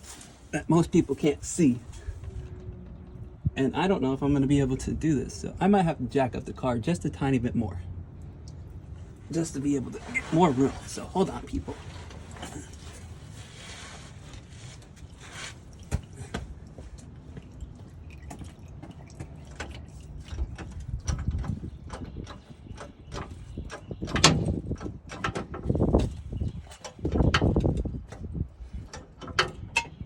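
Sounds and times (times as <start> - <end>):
metal clicks and knocks: 19.2 - 30.0.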